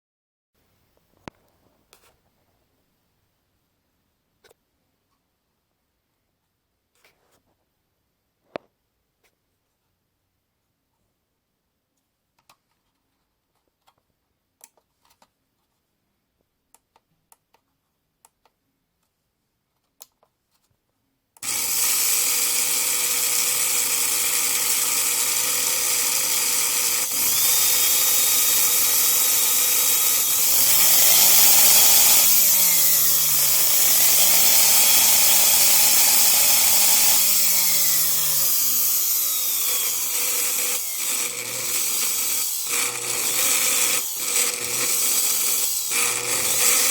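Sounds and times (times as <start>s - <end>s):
electric blender motor: 21.4s - 46.9s.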